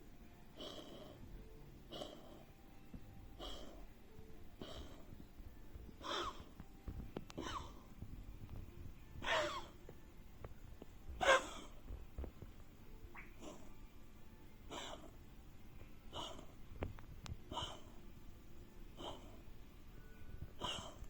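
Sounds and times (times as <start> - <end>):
cat coughing and wheezing: 0.5 - 2.5, 3.3 - 4.0, 4.6 - 5.2, 6.0 - 6.6, 7.3 - 8.0, 9.2 - 9.9, 11.2 - 11.9, 13.4 - 13.8, 14.7 - 15.2, 16.1 - 16.6, 17.5 - 18.0, 19.0 - 19.5, 20.5 - 21.0.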